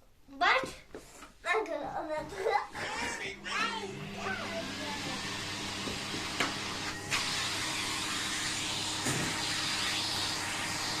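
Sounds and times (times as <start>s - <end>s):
vacuum cleaner running: 2.7s - 11.0s.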